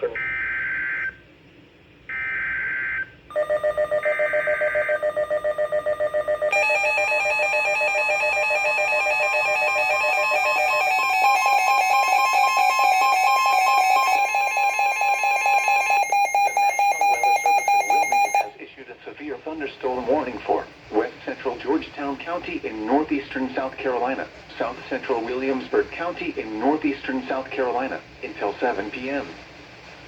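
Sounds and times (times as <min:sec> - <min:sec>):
pulsing electronic alarm: 0:02.1 - 0:18.5.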